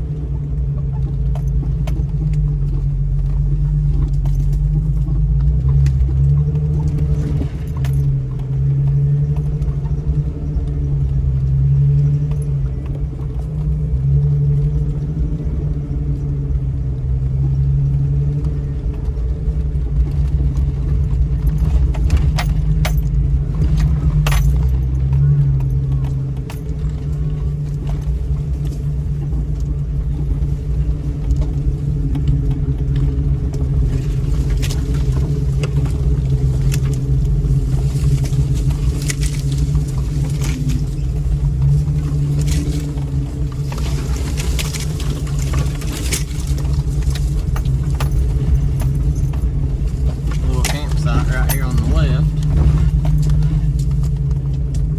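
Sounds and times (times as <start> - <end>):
car engine low rumble: 0.0 - 54.9
clicks and rattles: 18.3 - 54.9.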